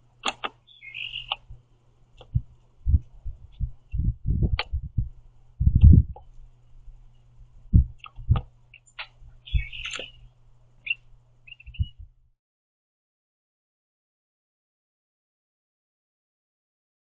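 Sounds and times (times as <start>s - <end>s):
bird pecking on feeder: 0.2s - 1.5s
bird chirping: 0.3s - 1.5s, 8.0s - 12.1s.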